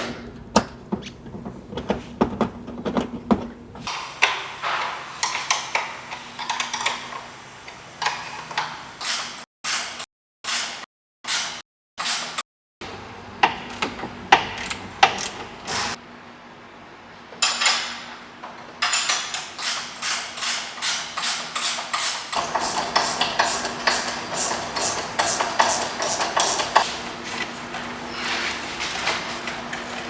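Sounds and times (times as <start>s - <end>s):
ratchet wrench strokes: 19.6s - 26.9s.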